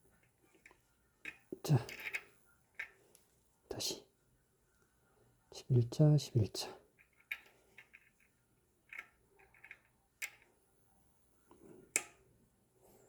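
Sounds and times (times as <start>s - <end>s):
clicks of bicycle hub parts: 11.9s - 12.2s.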